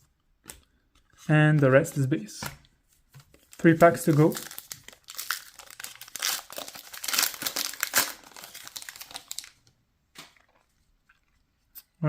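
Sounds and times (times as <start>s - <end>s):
foil wrapper crinkling and tearing: 3.4s - 9.6s.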